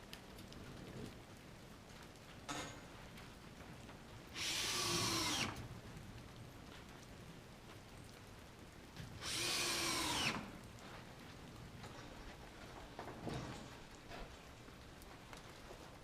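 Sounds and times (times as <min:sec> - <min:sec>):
power drill whine: 0:04.4 - 0:05.6, 0:09.2 - 0:10.5.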